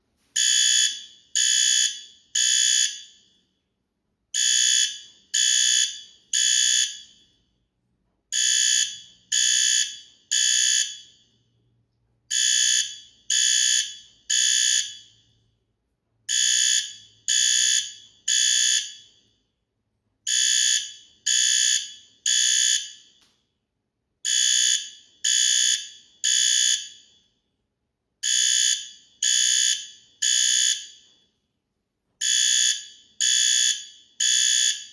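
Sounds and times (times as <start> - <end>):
fire alarm blasts: 0.4 - 3.5, 4.4 - 7.4, 8.3 - 11.5, 12.3 - 15.4, 16.3 - 19.4, 20.3 - 23.2, 24.2 - 27.4, 28.2 - 31.4, 32.2 - 34.9.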